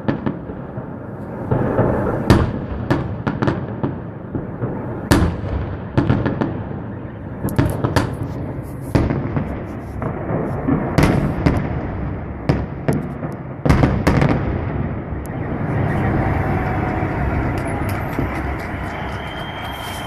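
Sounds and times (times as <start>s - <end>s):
fireworks bangs: 0.0s - 20.0s
rumbling noise: 14.4s - 20.0s.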